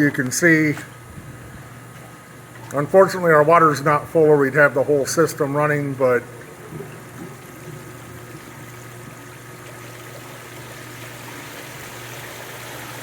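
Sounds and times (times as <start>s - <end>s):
low pump hum: 0.0s - 13.0s
water trickling and splashing: 6.2s - 13.0s.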